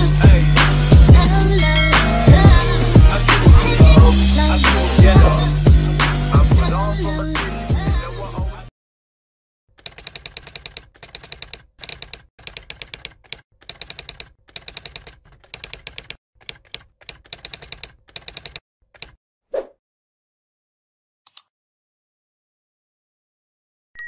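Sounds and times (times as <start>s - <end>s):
rapid keystroke-like clicks: 9.8s - 19.2s.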